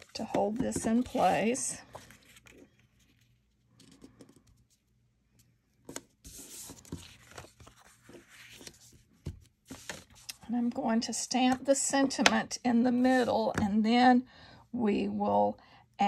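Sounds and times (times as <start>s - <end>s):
paper rustling and scraping: 5.9s - 10.4s.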